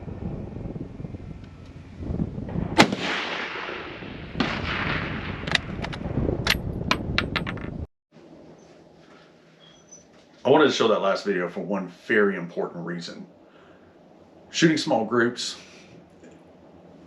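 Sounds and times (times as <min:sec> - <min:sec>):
low rumble: 0:00.0 - 0:07.9
rifle shot: 0:02.7 - 0:06.0.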